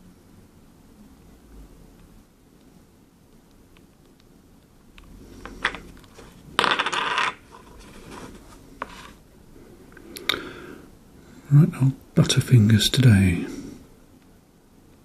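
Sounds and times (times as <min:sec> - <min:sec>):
small object clattering: 0:05.5 - 0:09.2.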